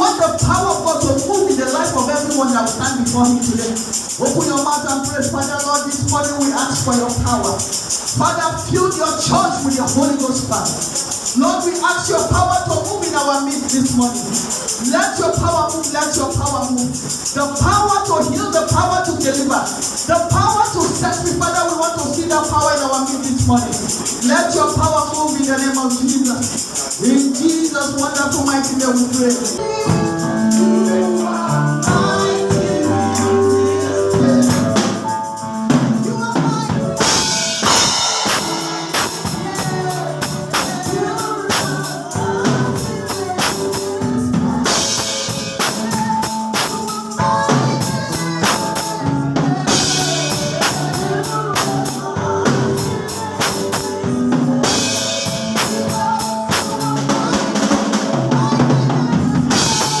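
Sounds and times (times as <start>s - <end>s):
drum kit: 0.0s - 60.0s
tambourine: 0.0s - 60.0s
pitched instruments: 21.0s - 60.0s
voices singing: 23.0s - 60.0s.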